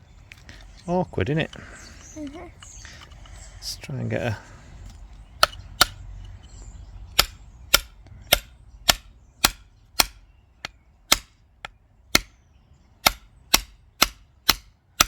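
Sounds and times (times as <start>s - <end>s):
hammer tapping chisel into rock: 5.4s - 6.4s, 7.1s - 12.3s.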